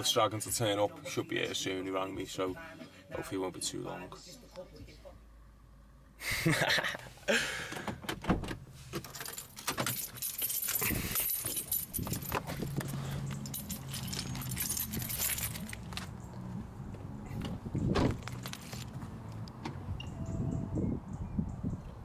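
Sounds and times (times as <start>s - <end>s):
keys jangling and rattling: 9.0s - 16.2s, 18.1s - 19.4s.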